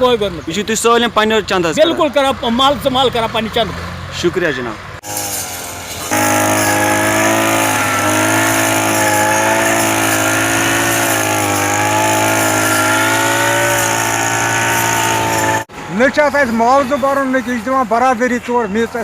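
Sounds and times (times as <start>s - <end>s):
heavy machine engine running: 5.6s - 15.9s.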